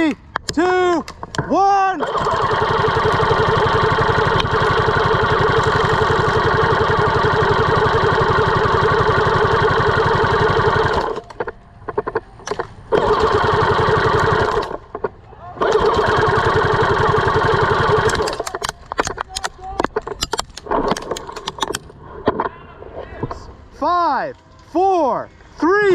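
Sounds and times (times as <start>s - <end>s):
airsoft minigun firing: 2.0s - 15.0s, 15.6s - 21.9s.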